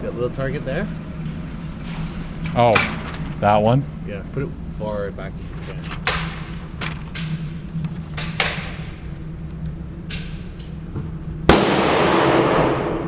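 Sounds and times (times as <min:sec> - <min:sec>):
pistol shots: 0:11.5 - 0:13.0.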